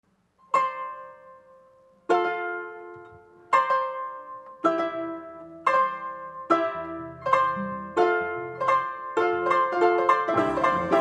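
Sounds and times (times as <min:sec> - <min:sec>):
harp plucked chords: 0:06.5 - 0:11.0.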